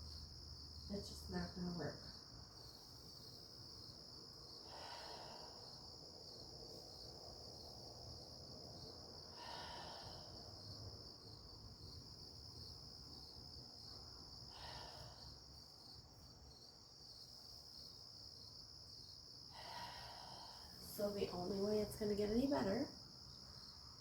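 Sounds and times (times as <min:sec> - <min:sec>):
insect chorus trilling: 0:02.1 - 0:21.6
soft breath: 0:04.6 - 0:05.9, 0:09.3 - 0:10.8, 0:14.5 - 0:15.6, 0:19.5 - 0:21.0.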